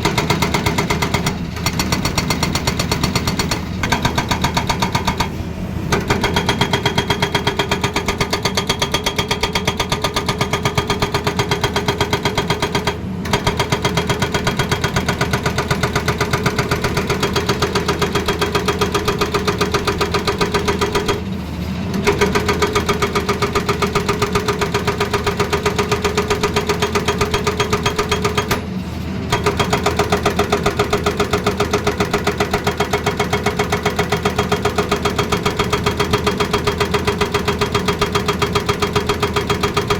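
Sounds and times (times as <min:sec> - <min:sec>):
excavator engine running: 0:00.0 - 0:39.9
hydraulic breaker hammering: 0:00.0 - 0:39.9.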